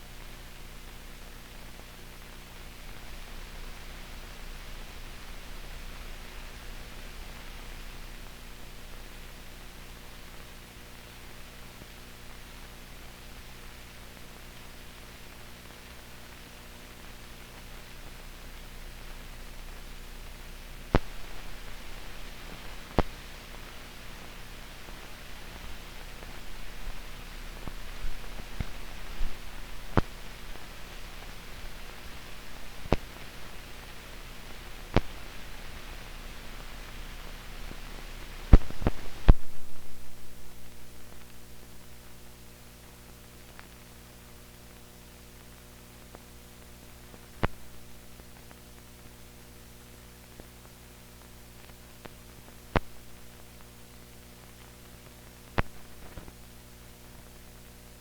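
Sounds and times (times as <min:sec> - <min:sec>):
electrical hum: 0:00.0 - 0:58.0
film hiss: 0:00.0 - 0:58.0
film clicks and pops: 0:55.6 - 0:56.3.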